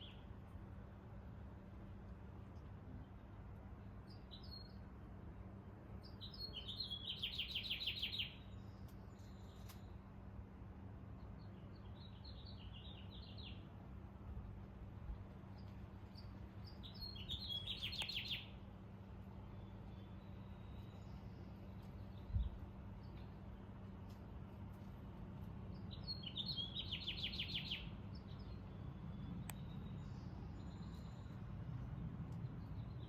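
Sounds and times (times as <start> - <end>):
songbird singing with trills: 0.0 - 0.3, 4.0 - 4.9, 6.0 - 10.0, 11.2 - 13.7, 15.5 - 18.7, 19.4 - 23.4, 25.7 - 33.0
steady low hum: 27.8 - 33.0.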